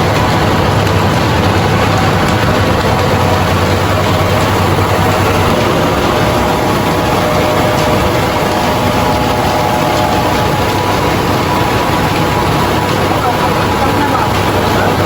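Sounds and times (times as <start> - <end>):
milling machine running: 0.0 - 15.0.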